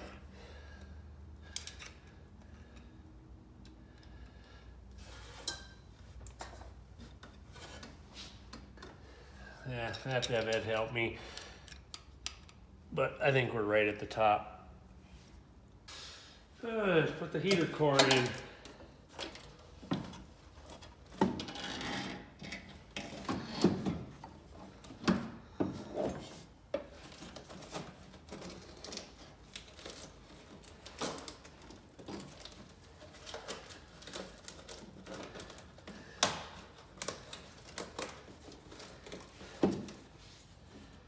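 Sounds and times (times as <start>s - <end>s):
metal parts and tools clattering: 17.5s - 18.5s.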